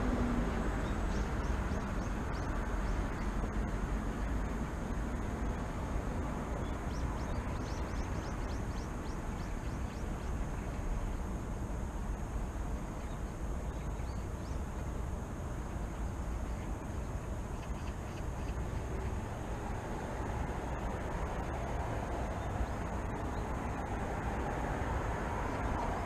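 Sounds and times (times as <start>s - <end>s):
city traffic rumble: 0.0s - 26.0s
small birds chirping: 0.8s - 3.5s, 6.5s - 10.8s, 13.0s - 14.7s.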